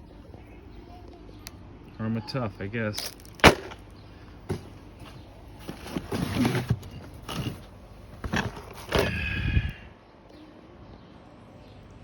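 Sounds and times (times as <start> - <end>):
packaging and plastic rustling: 5.6 - 9.2.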